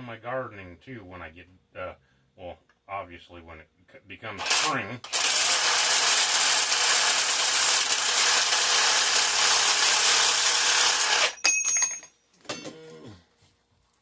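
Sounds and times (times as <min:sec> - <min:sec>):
power tool cutting metal: 0:04.4 - 0:11.4
light metallic clinks: 0:11.4 - 0:12.7.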